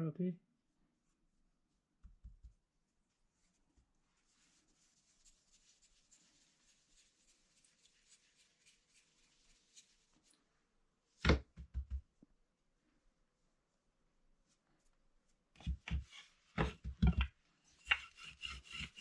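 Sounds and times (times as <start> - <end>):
rolling pin scraping on dough: 17.8 - 19.0.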